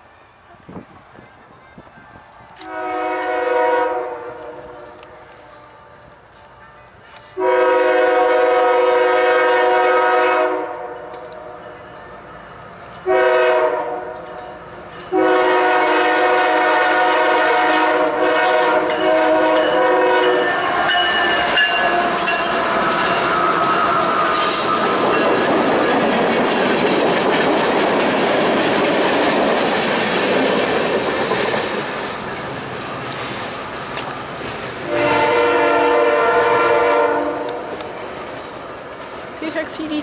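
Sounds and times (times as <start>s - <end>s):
locomotive air horn blasts: 2.6s - 6.1s, 7.3s - 12.0s, 13.0s - 14.3s, 15.1s - 23.8s, 34.8s - 37.8s
train wheels clattering over rail joints: 18.0s - 34.9s.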